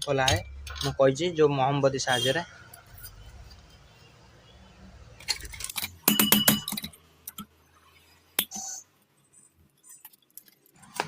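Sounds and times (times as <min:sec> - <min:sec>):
small metal parts clicking: 0:05.2 - 0:07.5, 0:09.8 - 0:11.0
metallic knock with ring: 0:06.0 - 0:06.9.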